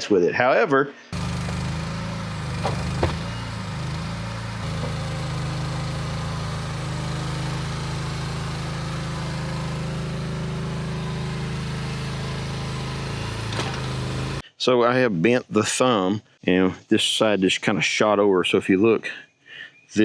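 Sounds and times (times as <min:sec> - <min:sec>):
excavator engine running: 0:01.2 - 0:14.4.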